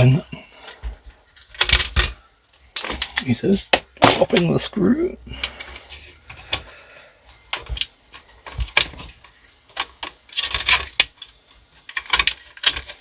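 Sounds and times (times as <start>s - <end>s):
computer parts clicking and scraping: 7.5s - 13.0s.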